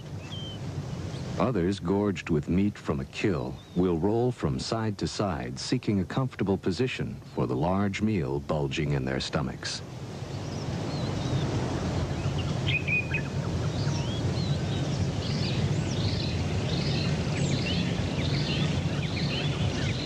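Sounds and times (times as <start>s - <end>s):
small birds chirping: 0.0s - 4.3s, 9.9s - 20.0s
low outdoor rumble: 0.0s - 10.2s.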